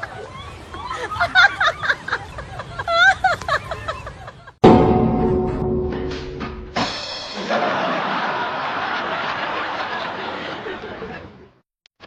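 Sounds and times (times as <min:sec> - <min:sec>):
ringing percussion hit: 0:04.6 - 0:07.9
crashing hissing cymbal wash: 0:06.2 - 0:07.8.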